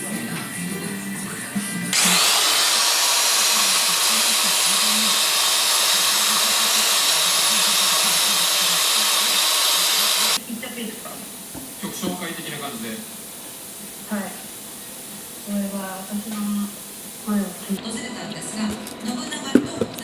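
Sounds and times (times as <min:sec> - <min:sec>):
high-pitched power tool running: 0:01.9 - 0:10.4.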